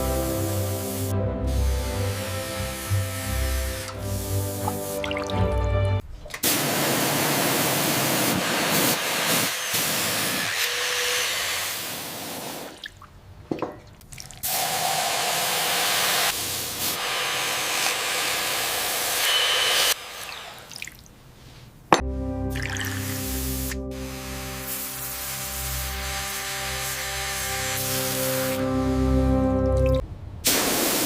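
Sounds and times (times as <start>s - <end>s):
spraying hiss: 0.0s - 5.1s, 6.4s - 12.8s, 14.4s - 20.0s, 22.9s - 28.7s, 30.4s - 31.0s.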